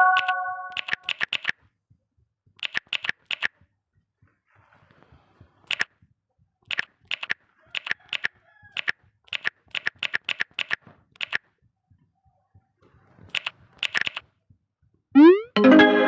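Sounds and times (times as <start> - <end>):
faint pitched tone: 0.0 - 0.8, 15.2 - 16.0.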